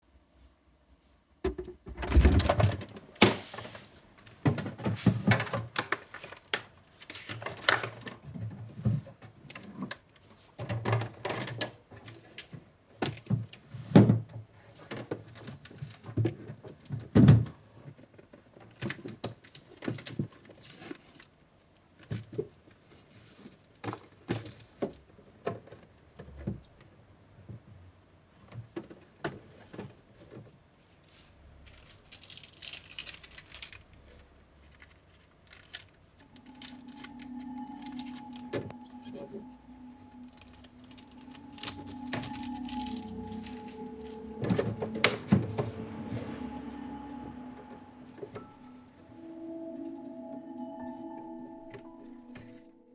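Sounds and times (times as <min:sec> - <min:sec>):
objects knocking and clattering: 0:01.4 - 0:06.5.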